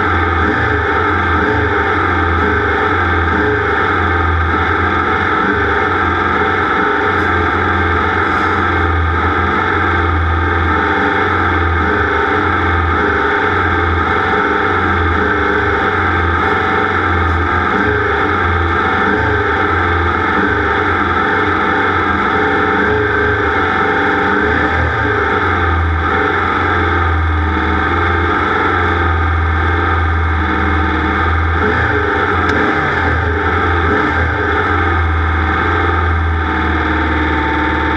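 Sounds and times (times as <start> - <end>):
race engine at high revs: 0.0 - 37.9.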